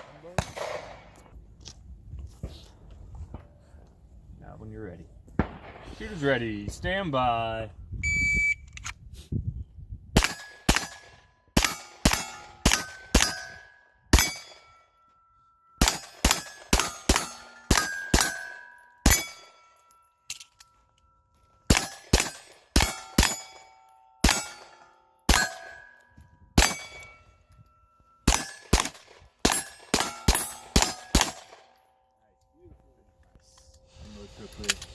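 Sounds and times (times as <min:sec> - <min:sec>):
pistol shots: 0:00.0 - 0:01.1, 0:10.2 - 0:14.6, 0:15.8 - 0:19.6, 0:21.7 - 0:25.8, 0:26.6 - 0:27.2, 0:28.2 - 0:31.8.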